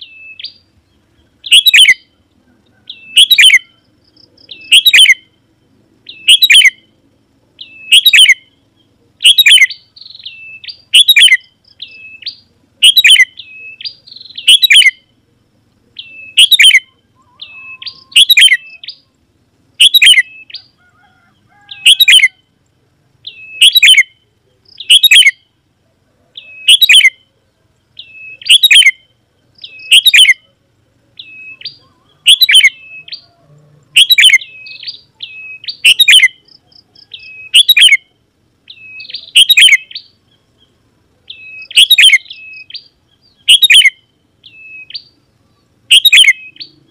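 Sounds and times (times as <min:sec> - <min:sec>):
bird calling bright phrase: 0:09.2 - 0:15.0, 0:16.0 - 0:19.1, 0:31.2 - 0:33.4, 0:41.3 - 0:45.2.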